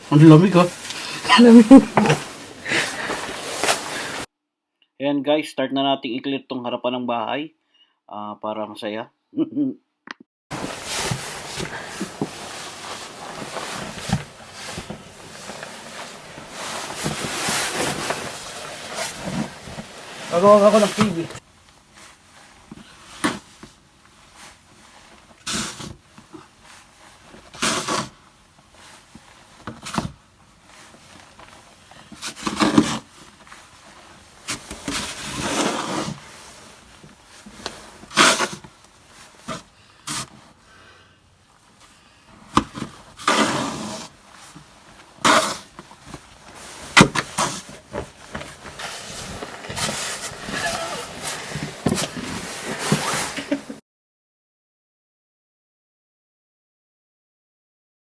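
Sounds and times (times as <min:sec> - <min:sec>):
snow shovel scraping snow: 0:00.0 - 0:04.3, 0:10.5 - 0:21.4, 0:22.0 - 0:41.0, 0:41.8 - 0:53.8.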